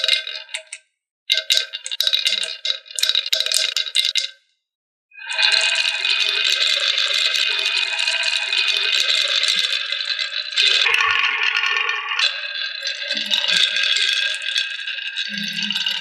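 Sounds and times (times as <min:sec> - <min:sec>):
marbles rattling down plastic track: 0:01.4 - 0:04.3, 0:05.3 - 0:11.2.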